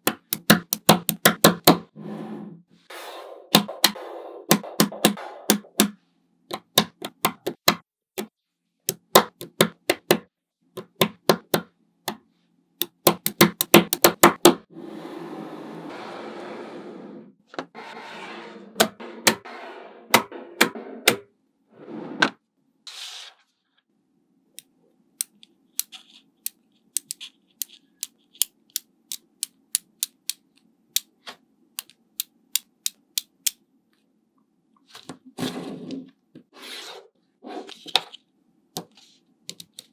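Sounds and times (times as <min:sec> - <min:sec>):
magnetic balls clicking: 0:00.0 - 0:01.8, 0:03.5 - 0:07.8, 0:08.9 - 0:10.2, 0:12.8 - 0:14.6, 0:25.2 - 0:31.1, 0:39.5 - 0:39.9.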